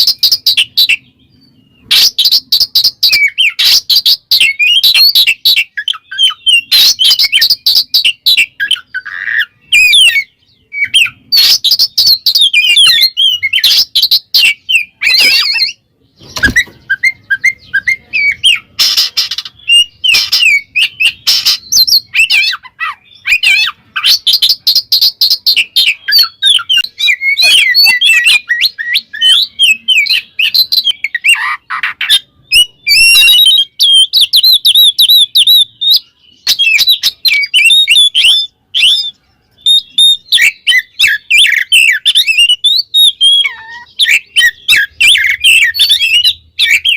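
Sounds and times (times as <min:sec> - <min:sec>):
bird singing whistled phrases and trills: 0:00.0 - 0:46.9.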